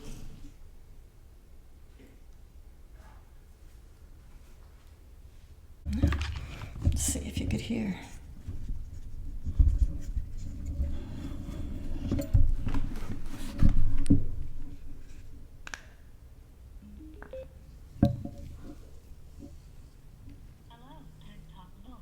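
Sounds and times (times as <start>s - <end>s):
thumps and rubbing: 5.9s - 15.5s, 18.0s - 20.4s.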